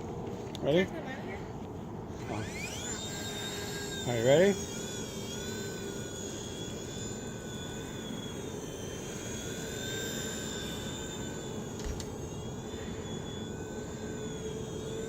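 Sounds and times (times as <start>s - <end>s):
toy helicopter rotor whine: 2.0s - 15.0s.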